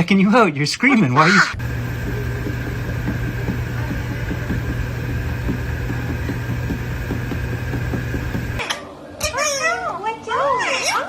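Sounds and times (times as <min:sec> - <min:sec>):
low mechanical hum: 0:01.3 - 0:08.8.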